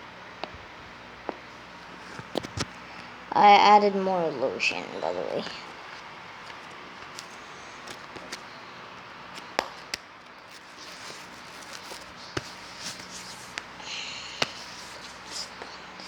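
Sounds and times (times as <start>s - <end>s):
squelchy slime hiss: 9.3s - 16.0s.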